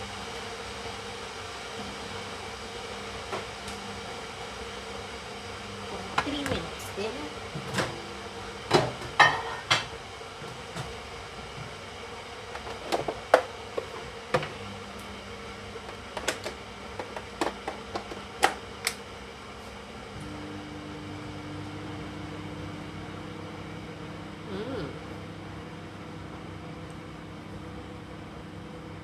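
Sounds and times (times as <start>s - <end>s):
microwave oven humming: 0.0s - 29.0s.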